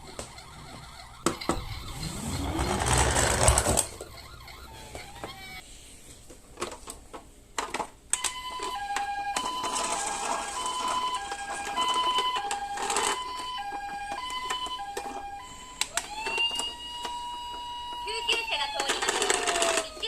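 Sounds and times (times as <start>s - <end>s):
rattling noise: 0.0s - 5.6s
toy two-tone siren: 0.0s - 5.6s, 8.2s - 20.0s
toy clicks: 8.1s - 20.0s.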